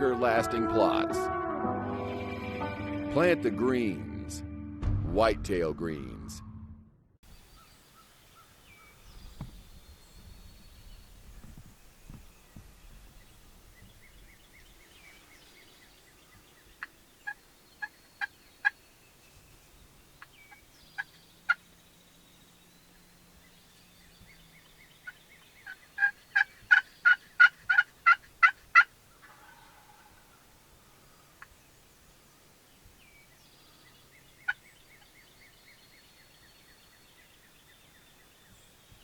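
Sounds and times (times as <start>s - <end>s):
wild turkey yelping: 16.8s - 18.8s, 20.2s - 21.6s, 25.0s - 30.6s.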